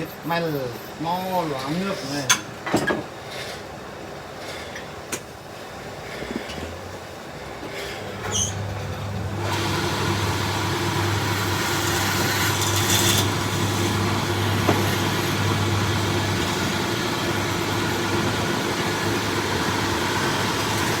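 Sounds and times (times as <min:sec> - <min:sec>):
power tool motor humming: 0:09.3 - 0:21.0.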